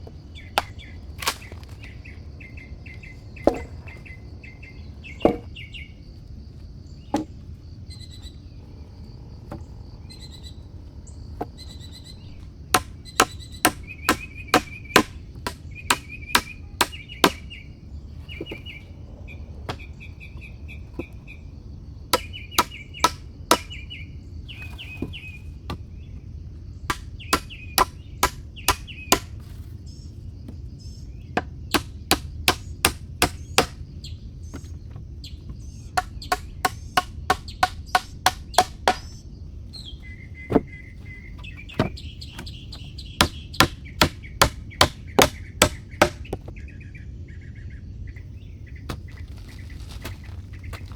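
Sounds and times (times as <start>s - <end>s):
small birds chirping: 0.0s - 50.9s
hand tool striking wood: 0.6s - 1.8s, 3.4s - 3.8s, 5.2s - 5.5s, 12.7s - 17.4s, 22.1s - 23.8s, 26.9s - 29.5s, 31.4s - 33.8s, 35.5s - 39.2s, 41.4s - 46.5s.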